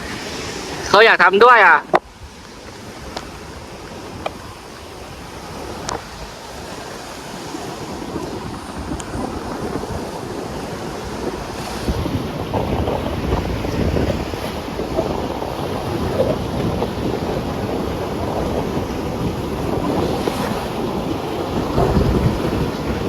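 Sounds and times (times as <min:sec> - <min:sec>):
surf washing onto beach: 0:00.0 - 0:23.0
wind buffeting microphone: 0:01.9 - 0:23.0.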